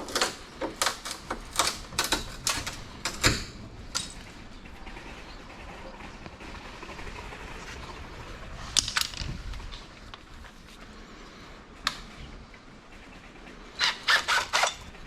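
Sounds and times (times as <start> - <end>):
hand tool scraping and clicking: 13.8 - 14.9.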